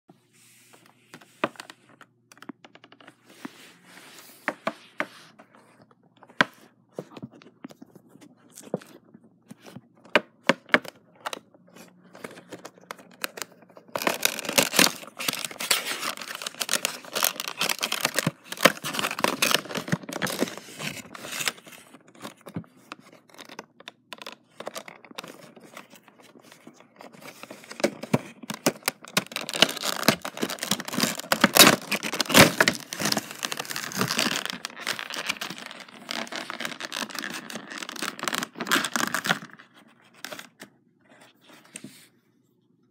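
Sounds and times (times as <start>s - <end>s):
packaging tearing and crinkling: 13.0s - 21.7s, 27.2s - 39.6s.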